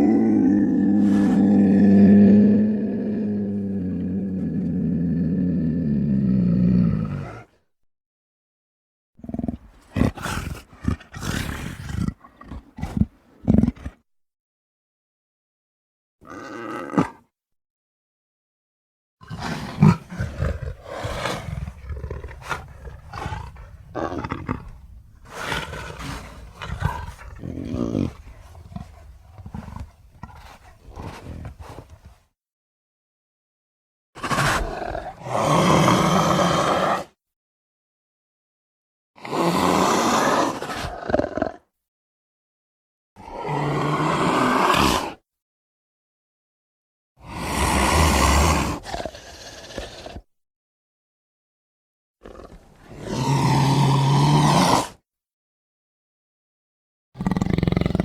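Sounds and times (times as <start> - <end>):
big cat roaring: 0.0 - 7.6, 9.2 - 14.0, 16.2 - 17.3, 19.2 - 32.1, 34.2 - 37.2, 39.2 - 41.6, 43.2 - 45.2, 47.2 - 50.3, 52.2 - 55.0, 57.2 - 58.0
animal grunts: 19.2 - 32.1, 57.2 - 58.0.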